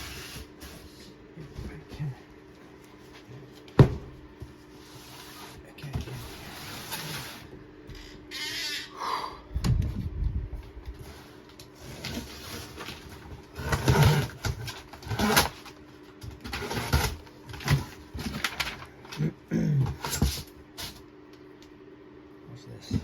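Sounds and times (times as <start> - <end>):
cardboard rustling and scraping: 0.0 - 2.1, 2.9 - 7.6, 10.8 - 18.8
dull thumps of cardboard: 3.8 - 4.2.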